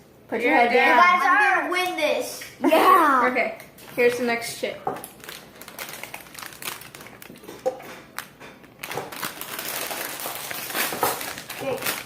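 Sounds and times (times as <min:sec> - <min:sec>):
chip bag crinkling: 0:05.0 - 0:12.0.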